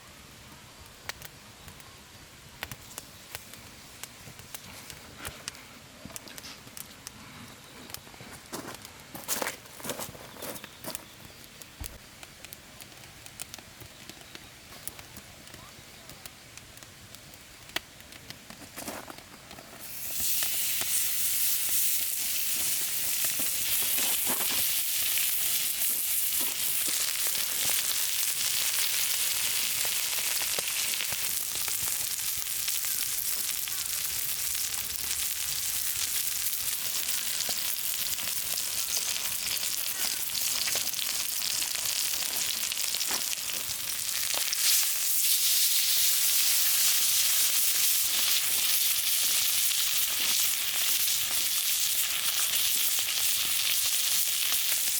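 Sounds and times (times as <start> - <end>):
food sizzling: 19.8 - 54.9.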